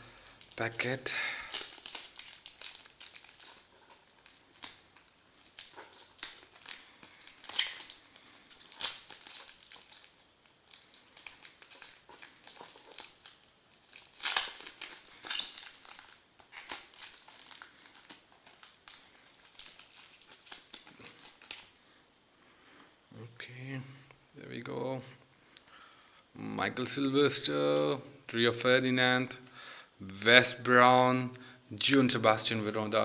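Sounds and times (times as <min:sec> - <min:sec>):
cards rustling: 0:00.1 - 0:21.7
foil pack tearing and crinkling: 0:00.1 - 0:21.7.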